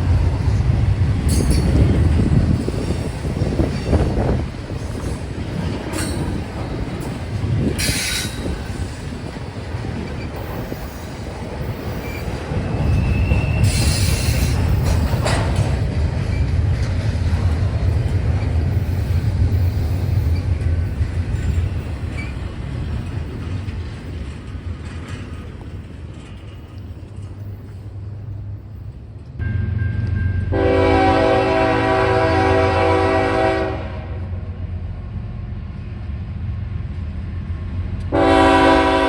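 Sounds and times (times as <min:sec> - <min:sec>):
freight train rumbling past: 0:00.0 - 0:39.0
train wheel squeal: 0:01.2 - 0:09.3, 0:10.0 - 0:16.5, 0:17.9 - 0:28.0
air brake hiss: 0:07.8 - 0:08.4.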